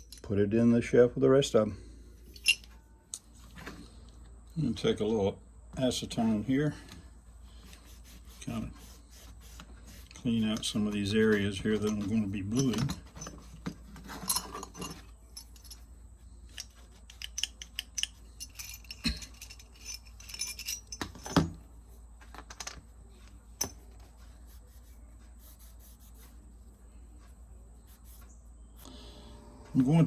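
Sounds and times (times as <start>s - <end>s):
metal tools clicking and rattling: 0.0s - 0.4s, 2.3s - 2.8s, 10.4s - 21.6s.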